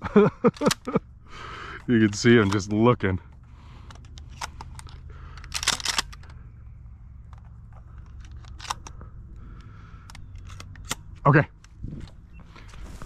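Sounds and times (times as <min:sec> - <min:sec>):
footsteps crunching dry vegetation: 0:12.5 - 0:13.0.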